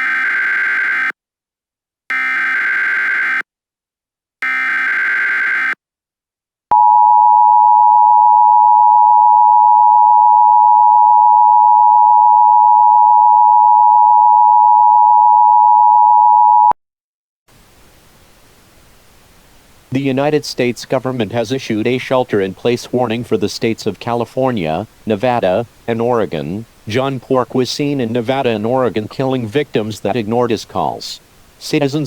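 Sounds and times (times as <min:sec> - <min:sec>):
faint hiss: 0:17.5 - 0:32.0.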